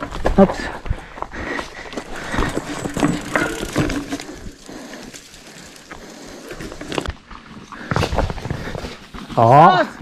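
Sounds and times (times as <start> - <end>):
bike tyres on dirt: 0.0 - 10.0
bike chain and frame clatter: 1.8 - 7.1.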